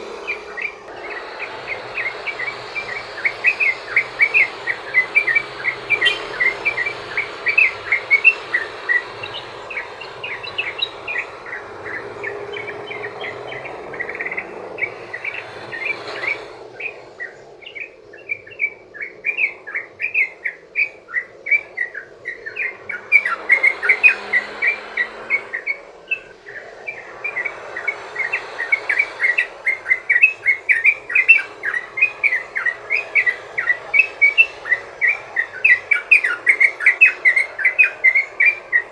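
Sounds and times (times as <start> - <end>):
bird singing rapid chirps: 0.0 - 38.9
insect drone: 0.0 - 38.9.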